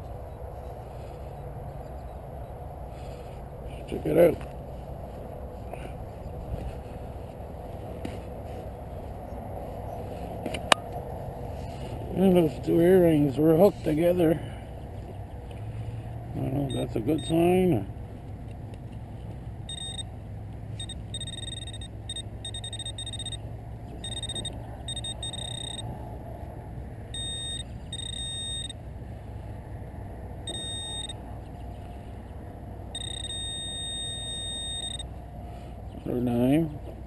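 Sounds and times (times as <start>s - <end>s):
metal detector beeping: 16.5s - 17.6s, 19.7s - 20.1s, 20.8s - 25.9s, 27.1s - 28.8s, 30.4s - 31.3s, 32.9s - 35.2s.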